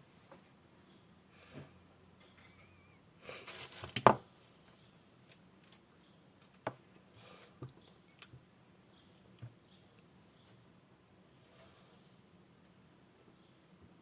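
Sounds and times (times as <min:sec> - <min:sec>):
rustling: 0:02.6 - 0:08.3.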